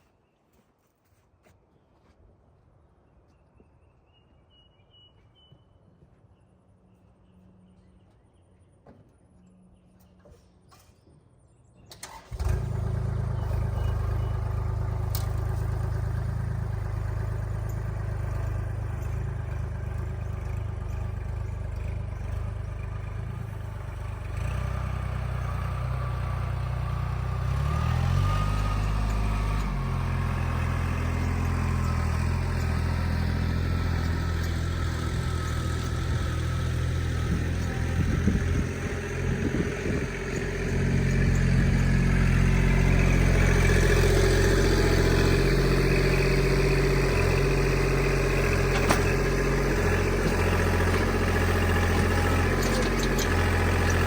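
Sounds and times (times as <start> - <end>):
engine starting and idling: 11.9 - 54.0.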